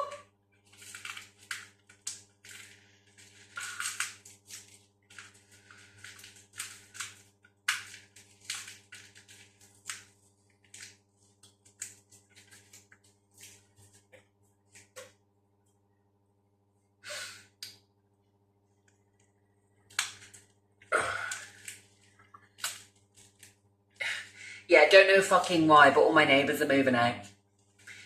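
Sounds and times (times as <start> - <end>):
faint steady hum: 0.0 - 28.0
packaging crinkling and rustling: 0.6 - 15.1, 19.9 - 20.6, 21.3 - 23.7.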